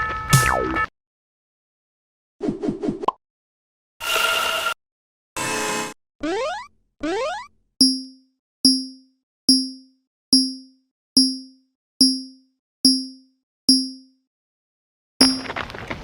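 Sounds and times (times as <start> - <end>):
sharp ringing percussive knocks: 7.8 - 14.2.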